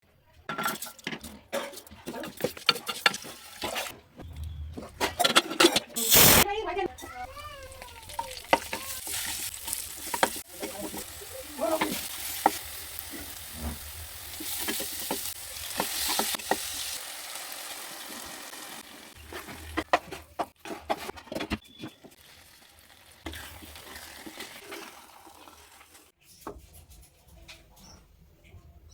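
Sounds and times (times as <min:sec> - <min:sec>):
spoon scraping against pot: 0:00.5 - 0:04.0
food sizzling in hot oil: 0:06.0 - 0:06.5, 0:07.1 - 0:19.8, 0:22.1 - 0:26.1.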